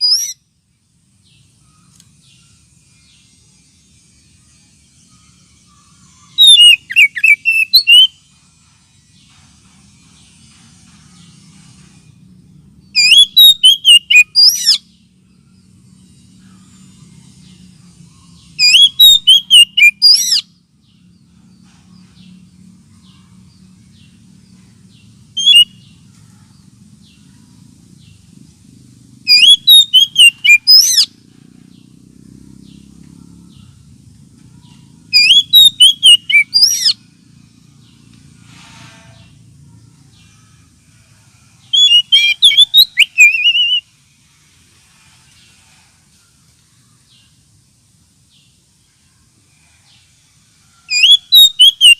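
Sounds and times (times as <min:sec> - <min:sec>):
bird whistled calls: 0:00.0 - 0:00.4, 0:06.3 - 0:08.2, 0:13.0 - 0:14.8, 0:18.6 - 0:20.5, 0:25.4 - 0:25.8, 0:29.3 - 0:31.2, 0:35.1 - 0:37.0, 0:41.7 - 0:43.8, 0:50.9 - 0:51.9.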